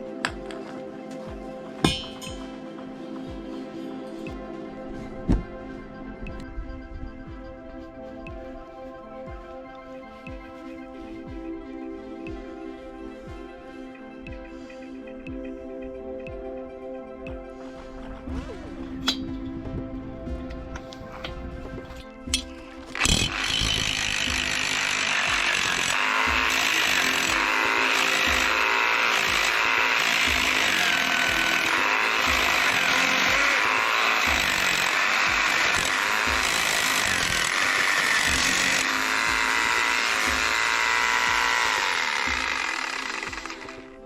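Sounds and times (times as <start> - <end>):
power drill boring into soil: 22.4 - 44.0.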